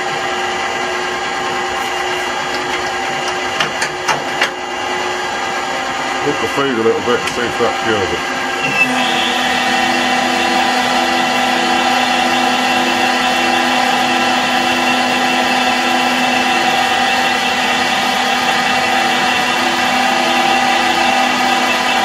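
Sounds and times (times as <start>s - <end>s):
lathe cutting steel humming: 0.0s - 22.0s.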